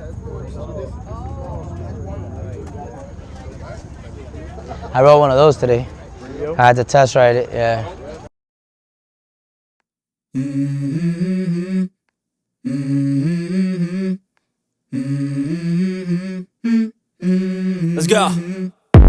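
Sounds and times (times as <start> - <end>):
hummed vocal melody: 10.4 - 12.0, 12.6 - 14.3, 14.9 - 18.8.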